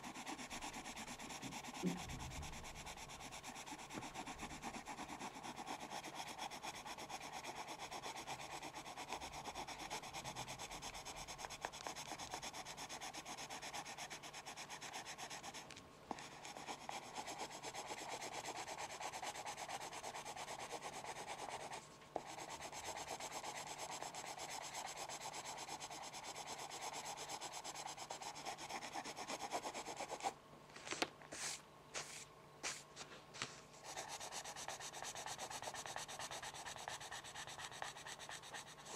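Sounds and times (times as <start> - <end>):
pencil scratching on paper: 0.0 - 30.4, 31.3 - 38.9.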